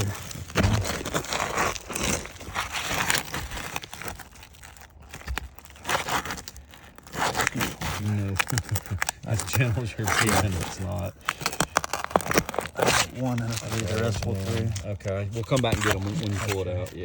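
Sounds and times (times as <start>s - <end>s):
roof shingle crackling and tearing: 0.0s - 17.0s.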